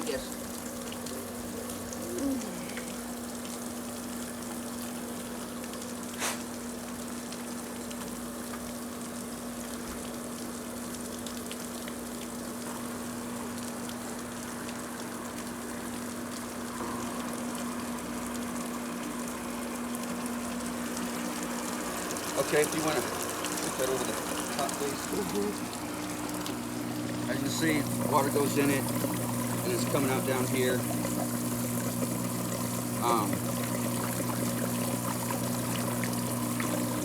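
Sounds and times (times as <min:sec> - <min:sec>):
pool pump humming: 0:00.0 - 0:37.0
water rushing through pump: 0:00.0 - 0:37.0.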